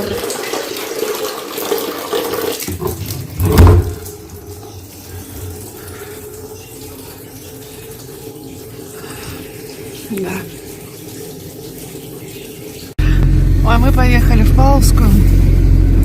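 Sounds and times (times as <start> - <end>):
tap water running into container: 0.0 - 13.0
low thump: 2.7 - 4.1.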